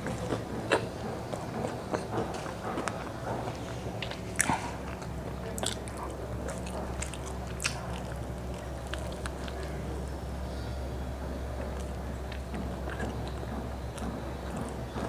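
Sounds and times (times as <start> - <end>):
person chewing crispy chicken: 0.0 - 15.0
steady low hum: 0.0 - 15.0.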